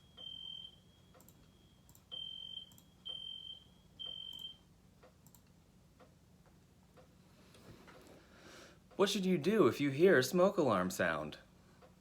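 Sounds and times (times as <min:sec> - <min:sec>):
smoke alarm beeping: 0:00.0 - 0:04.7.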